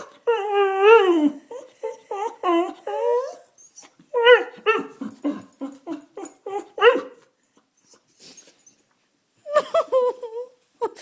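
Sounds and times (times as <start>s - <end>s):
dog whining and yipping: 0.0s - 7.2s.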